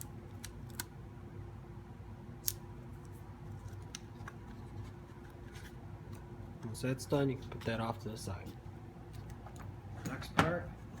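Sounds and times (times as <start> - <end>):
tape clicking and crinkling: 0.0 - 1.0, 2.4 - 6.8
steady low hum: 0.0 - 11.0.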